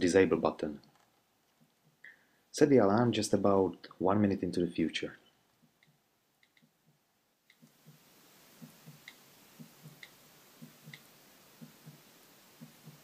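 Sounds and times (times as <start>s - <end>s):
light hiss: 4.7s - 13.0s
clock ticking: 8.6s - 13.0s.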